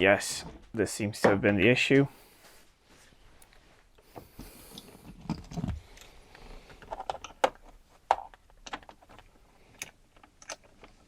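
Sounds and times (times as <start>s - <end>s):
scattered clicks and light knocks: 4.7s - 11.0s.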